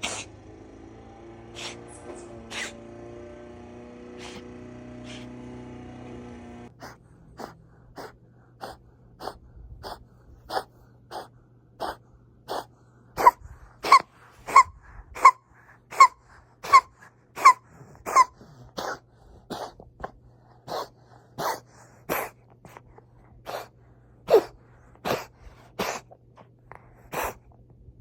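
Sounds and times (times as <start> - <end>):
kitten coughing and wheezing: 0.0 - 0.3, 6.8 - 27.5.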